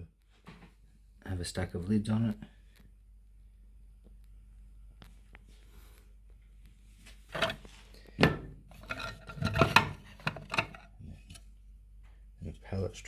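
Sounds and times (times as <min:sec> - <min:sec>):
plastic rubbing and scraping: 0:07.2 - 0:07.8, 0:08.7 - 0:11.4
plastic parts clacking: 0:07.3 - 0:10.9.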